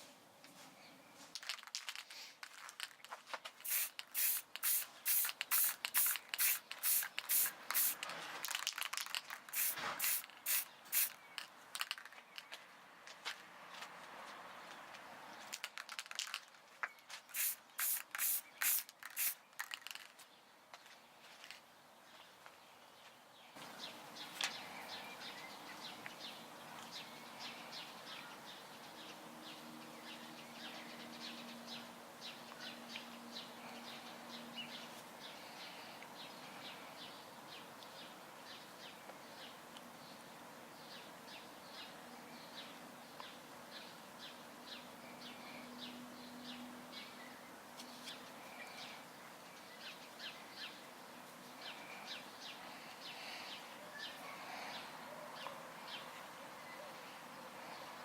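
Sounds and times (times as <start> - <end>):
small birds chirping: 0.6 - 13.0, 14.5 - 58.0.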